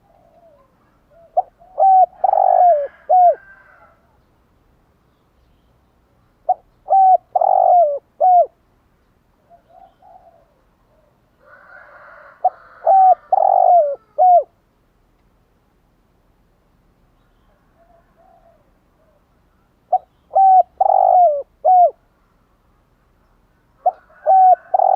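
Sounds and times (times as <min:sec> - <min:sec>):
dove cooing: 0:00.0 - 0:04.0, 0:06.4 - 0:08.6, 0:09.4 - 0:14.6, 0:17.5 - 0:19.3, 0:19.9 - 0:22.0, 0:23.8 - 0:24.9
soft faint bird calls: 0:00.0 - 0:14.6, 0:17.0 - 0:24.9.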